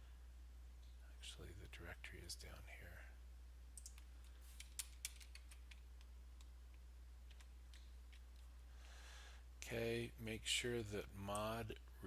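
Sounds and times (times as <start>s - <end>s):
low steady hum: 0.0s - 12.0s
computer keyboard and mouse clicks: 3.8s - 6.5s.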